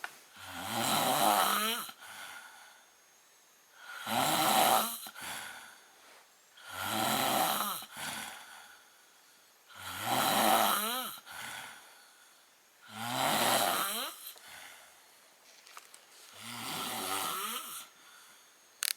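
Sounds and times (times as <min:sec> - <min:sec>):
man snoring heavily: 0:00.3 - 0:02.8, 0:03.7 - 0:05.8, 0:06.6 - 0:08.9, 0:09.6 - 0:15.0, 0:16.3 - 0:18.4.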